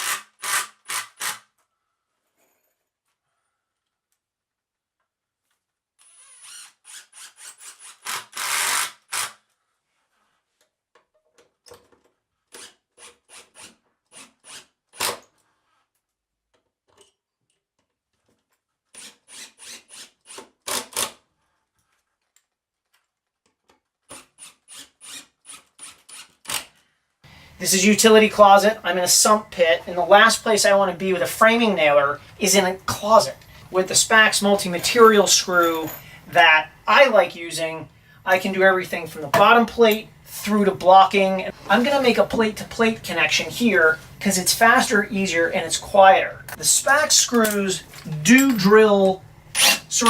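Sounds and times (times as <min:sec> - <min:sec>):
power driver driving screws: 0:00.0 - 0:01.5, 0:06.0 - 0:09.4, 0:12.5 - 0:15.3, 0:19.0 - 0:21.2, 0:49.5 - 0:50.0.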